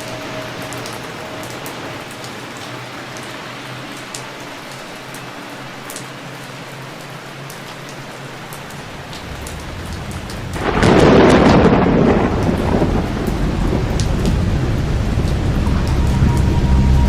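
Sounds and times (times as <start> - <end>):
thunder rumble: 0.0 - 3.4, 8.8 - 17.0
heavy rain: 0.0 - 17.0.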